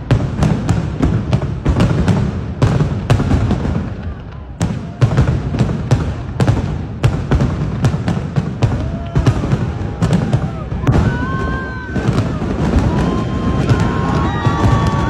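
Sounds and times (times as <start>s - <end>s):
fireworks bangs and cracks: 0.0s - 15.0s
rumble of distant fireworks: 0.0s - 15.0s.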